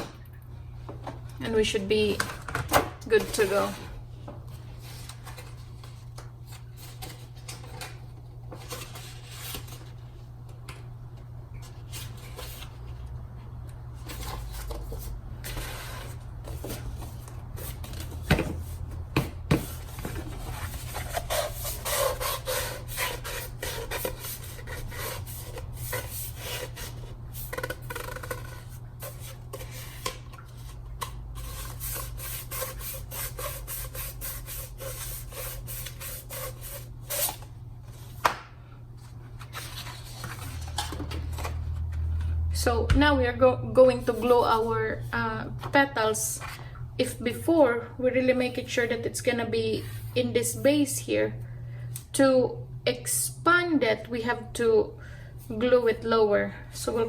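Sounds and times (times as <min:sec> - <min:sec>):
steady low hum: 0:00.0 - 0:57.0
paper scraping strokes: 0:19.6 - 0:38.0
paper rustling: 0:39.0 - 0:42.3.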